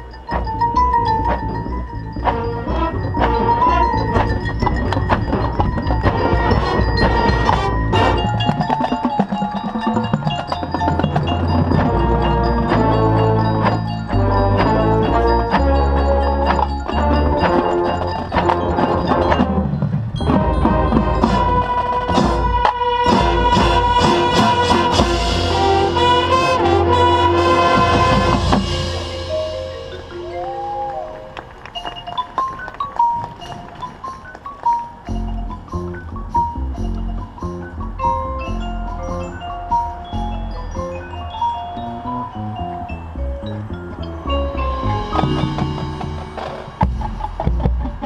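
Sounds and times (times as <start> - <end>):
mallet percussion bell-like notes: 0.0 - 48.0
marching band music: 0.0 - 48.0
brass sustained chords: 20.6 - 30.1.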